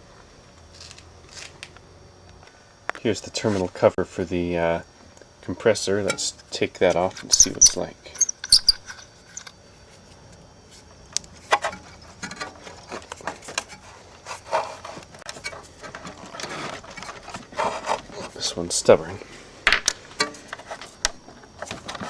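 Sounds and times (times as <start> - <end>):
clicks knocks and scraping: 7.0 - 9.5, 11.4 - 18.4.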